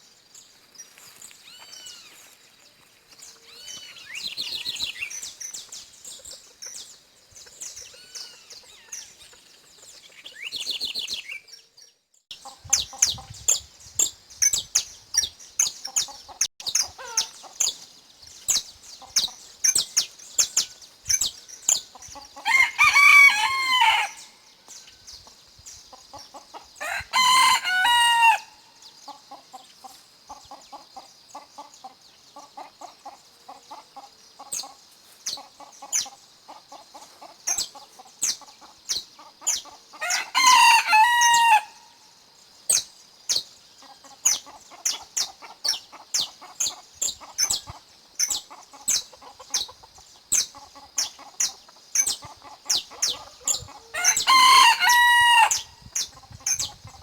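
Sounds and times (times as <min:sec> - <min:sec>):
small birds chirping: 0:00.0 - 0:57.0
chickens clucking: 0:12.3 - 0:13.5, 0:15.2 - 0:17.9, 0:21.7 - 0:23.8, 0:25.2 - 0:28.4, 0:29.0 - 0:41.6, 0:43.8 - 0:57.0
rooster crowing: 0:22.4 - 0:24.4, 0:26.8 - 0:28.6, 0:40.0 - 0:41.9, 0:53.9 - 0:55.8.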